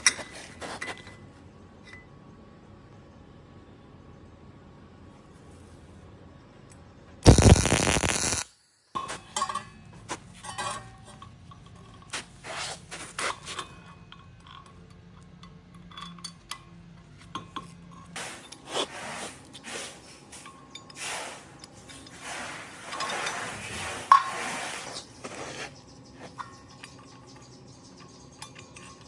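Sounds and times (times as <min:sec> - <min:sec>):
loud harsh noise burst: 0:07.2 - 0:08.8
metal parts clinking and scraping: 0:09.0 - 0:18.9, 0:22.8 - 0:24.4, 0:25.0 - 0:29.0.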